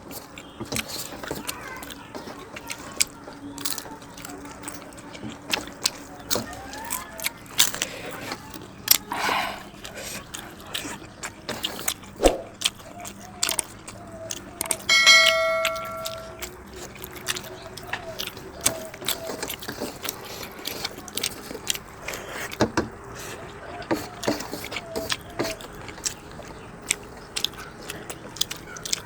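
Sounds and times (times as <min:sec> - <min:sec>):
chewing and mouth noises: 0:00.0 - 0:29.0
metallic ring: 0:14.9 - 0:16.4.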